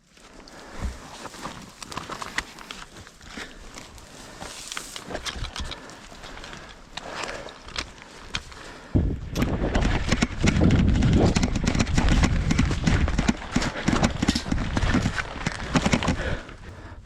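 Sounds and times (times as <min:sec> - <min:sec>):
microphone jostling rumble: 0:08.9 - 0:16.7
running footfalls: 0:10.4 - 0:16.7.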